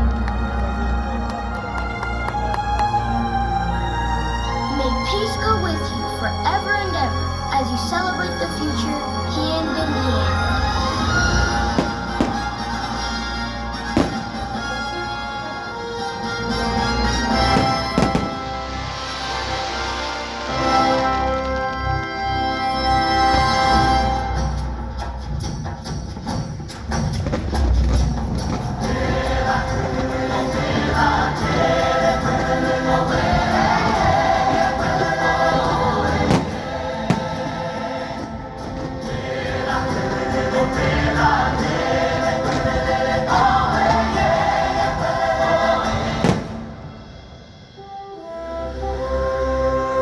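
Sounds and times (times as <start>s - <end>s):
choir with orchestra over loudspeakers: 0.0s - 25.2s, 28.2s - 50.0s
firework bangs: 11.0s - 14.8s, 17.4s - 19.0s, 26.8s - 40.9s, 41.6s - 47.4s.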